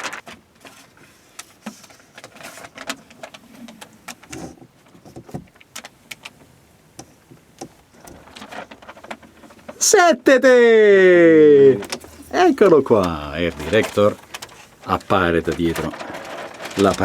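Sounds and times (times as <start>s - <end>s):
plastic crackling: 0.0s - 6.5s, 7.5s - 17.0s.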